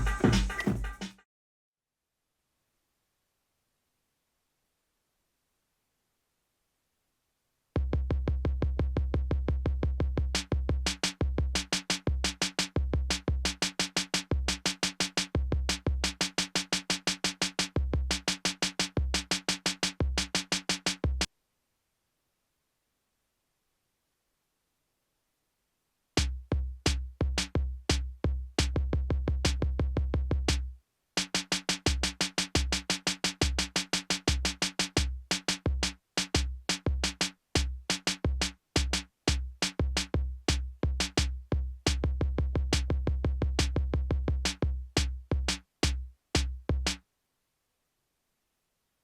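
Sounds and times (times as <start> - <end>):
deep kick drum thumps: 0.0 - 1.0, 7.8 - 13.5, 26.2 - 30.6, 35.7 - 47.0
sharp clicky drum hits: 0.0 - 1.2.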